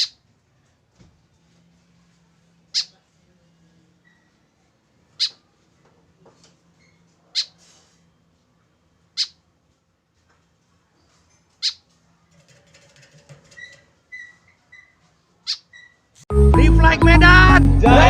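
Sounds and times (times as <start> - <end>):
bird giving short sharp calls: 7.3 - 7.7, 9.2 - 9.4.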